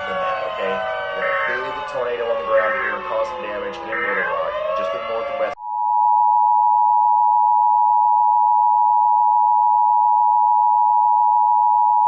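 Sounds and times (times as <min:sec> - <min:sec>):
steady electronic two-tone alert: 0:00.0 - 0:06.3.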